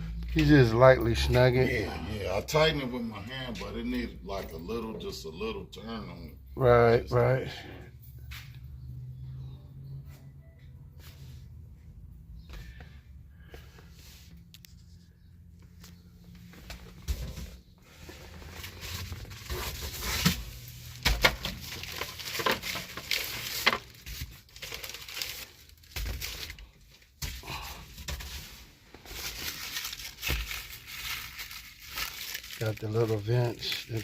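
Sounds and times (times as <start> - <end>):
packaging rustling and crinkling: 16.7 - 34.0.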